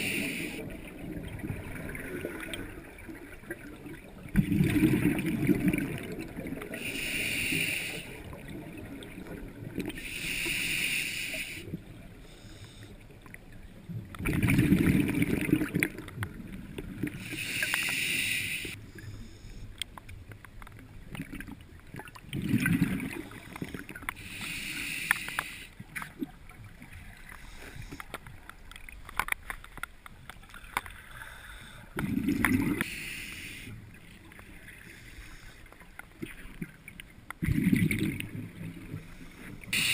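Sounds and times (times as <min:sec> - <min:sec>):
hissing regulator inhalations: 0:00.0 - 0:00.7, 0:06.8 - 0:08.2, 0:10.0 - 0:13.0, 0:17.2 - 0:19.7, 0:24.2 - 0:25.8, 0:39.0 - 0:39.9.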